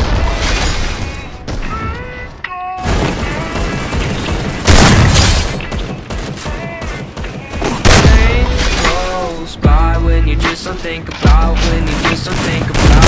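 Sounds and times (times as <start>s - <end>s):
song with sung vocals: 6.4s - 13.0s.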